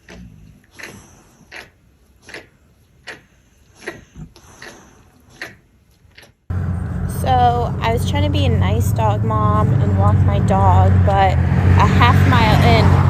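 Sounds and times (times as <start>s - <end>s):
loud low hum: 6.5s - 13.0s.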